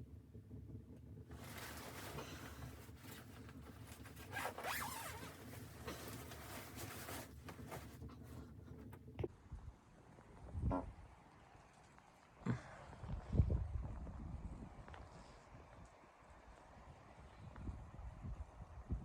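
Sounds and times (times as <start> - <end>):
zipper being drawn: 4.0 - 7.8.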